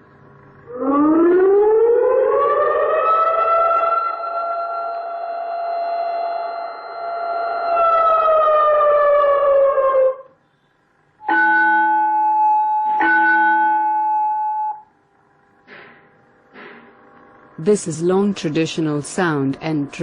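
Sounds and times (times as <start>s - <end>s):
electronic bell siren wail: 0.7s - 10.4s, 11.2s - 14.9s
struck bell-like tones: 11.2s - 14.9s.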